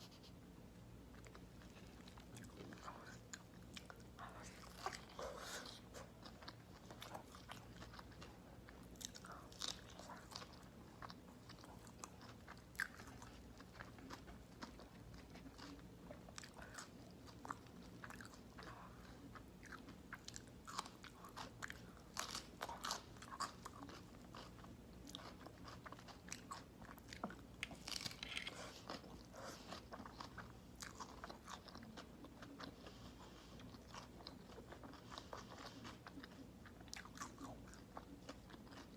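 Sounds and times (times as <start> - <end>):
person biting and chewing: 25.5 - 31.1
crisp crunches and wet clicks: 27.6 - 28.6.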